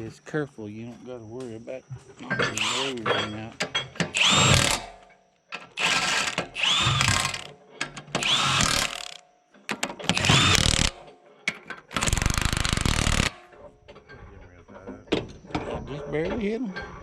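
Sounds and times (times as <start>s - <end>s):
power tool whining: 2.4s - 3.2s, 4.0s - 5.0s, 5.6s - 9.2s, 9.9s - 11.0s, 11.9s - 13.4s
impact wrench hammering rattle: 2.4s - 5.0s, 5.6s - 13.6s.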